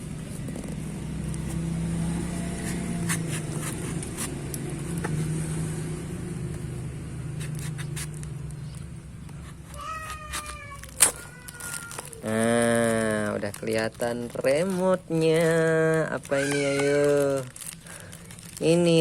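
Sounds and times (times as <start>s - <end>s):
packaging scrapes and clicks: 2.2s - 4.4s, 7.4s - 19.0s.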